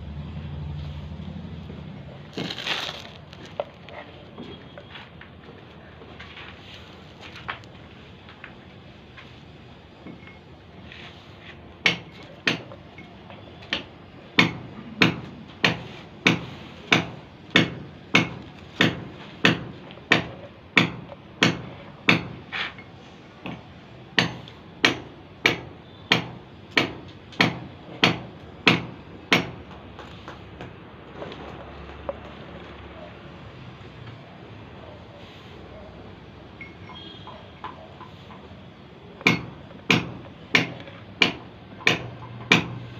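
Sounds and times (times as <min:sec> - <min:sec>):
hammer striking: 0:11.8 - 0:12.7, 0:13.7 - 0:22.8, 0:23.4 - 0:29.7, 0:39.2 - 0:42.9.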